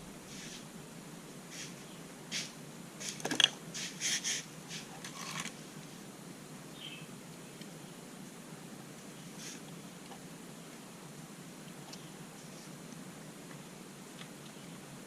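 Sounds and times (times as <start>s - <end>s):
faint room noise: 0.0s - 15.0s
handling clicks and scrapes: 1.5s - 5.6s.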